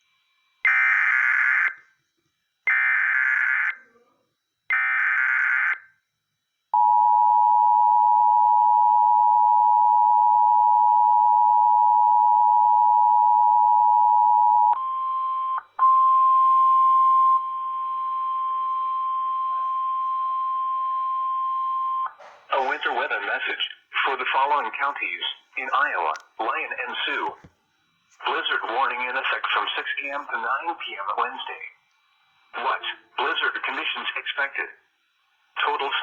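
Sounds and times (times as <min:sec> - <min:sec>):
harsh digital data tones: 0:22.5 - 0:31.9, 0:35.6 - 0:36.0.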